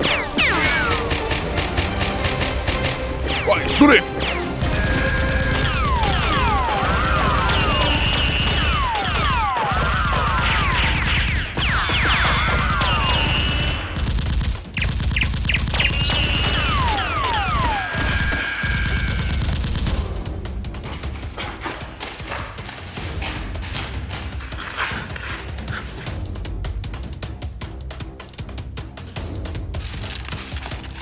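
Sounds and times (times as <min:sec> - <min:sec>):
rapid machine-gun fire: 0:00.0 - 0:03.9, 0:04.6 - 0:17.8.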